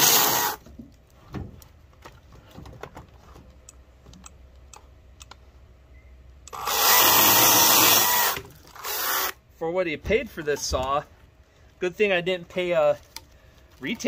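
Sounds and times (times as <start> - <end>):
electric chainsaw motor: 0.0 - 0.6, 6.5 - 9.4.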